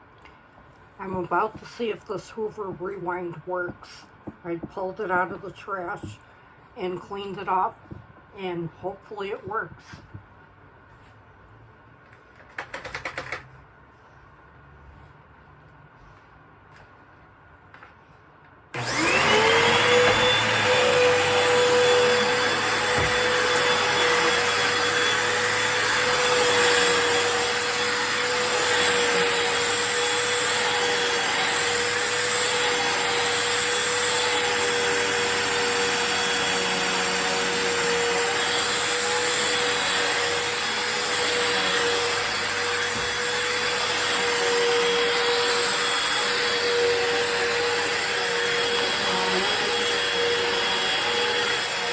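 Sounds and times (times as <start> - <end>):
vacuum cleaner motor whining: 18.8 - 51.9.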